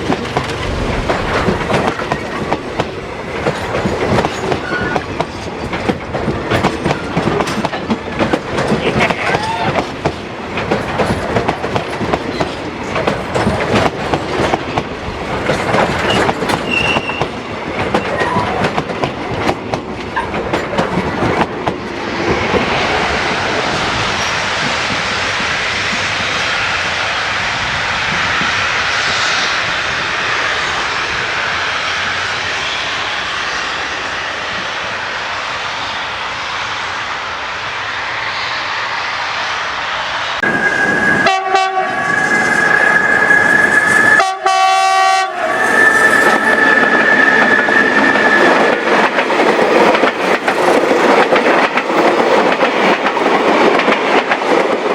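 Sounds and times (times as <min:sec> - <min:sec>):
train wheels clattering over joints: 0:00.0 - 0:22.6, 0:45.6 - 0:54.9
wheels rolling on rail: 0:00.0 - 0:28.6, 0:40.4 - 0:54.9.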